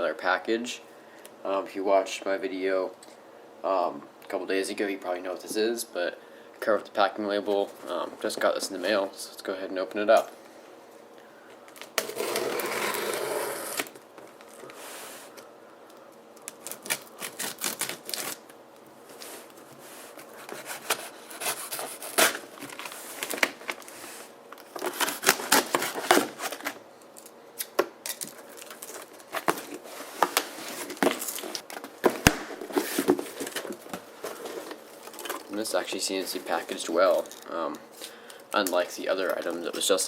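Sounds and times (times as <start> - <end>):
package packaging tearing and crinkling: 16.4 - 18.5, 20.3 - 24.0, 24.6 - 35.5.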